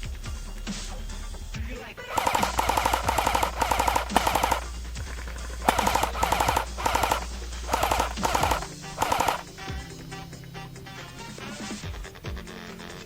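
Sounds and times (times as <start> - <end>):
airsoft gun automatic bursts: 2.1 - 9.7.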